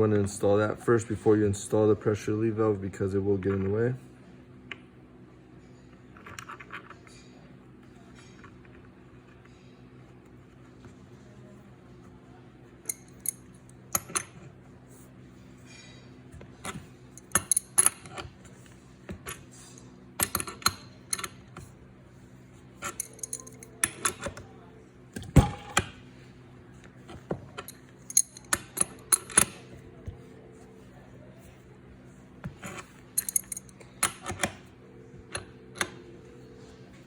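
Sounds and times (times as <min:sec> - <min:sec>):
steady low hum: 0:00.0 - 0:37.0
metallic clicks of wrench and fittings: 0:12.9 - 0:14.2, 0:22.8 - 0:24.2, 0:27.6 - 0:29.5, 0:33.2 - 0:34.5.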